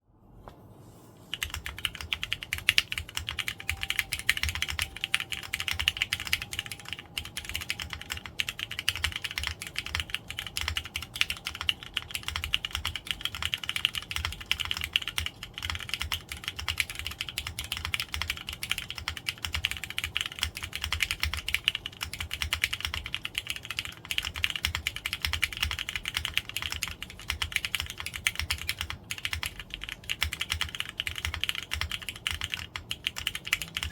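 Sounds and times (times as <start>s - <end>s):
fast typing on keyboard: 1.3s - 33.9s.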